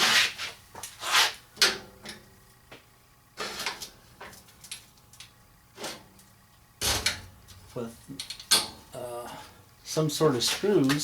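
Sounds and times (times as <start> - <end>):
parts scraping on a bench: 3.4 - 4.0.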